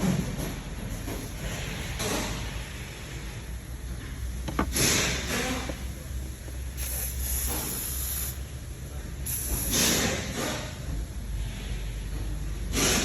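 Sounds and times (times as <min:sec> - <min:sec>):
aerosol spray hissing: 0:04.5 - 0:08.4.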